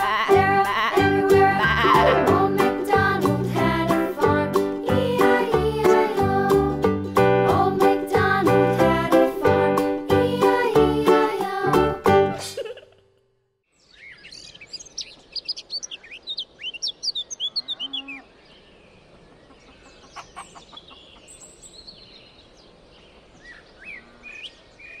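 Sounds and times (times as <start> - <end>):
birds chirping: 13.7 - 25.0.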